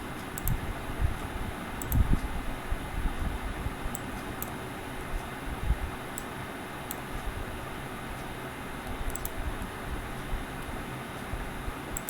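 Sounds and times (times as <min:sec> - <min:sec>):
fan-like background hiss: 0:00.0 - 0:12.0
computer mouse clicks: 0:00.2 - 0:00.6, 0:01.8 - 0:02.3, 0:08.8 - 0:09.7.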